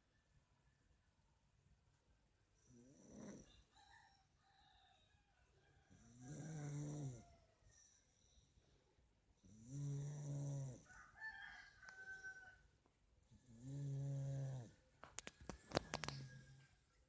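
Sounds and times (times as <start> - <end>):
person snoring: 2.6 - 3.6, 6.0 - 7.3, 9.4 - 10.9, 13.3 - 14.8
faint chicken calling: 10.8 - 12.8, 15.2 - 17.0.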